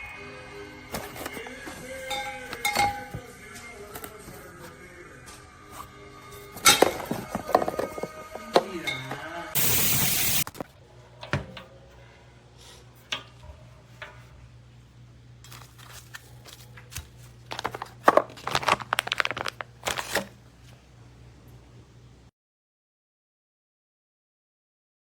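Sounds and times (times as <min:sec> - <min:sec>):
crinkling and clicking handling noises: 0:00.9 - 0:04.4, 0:15.4 - 0:20.8.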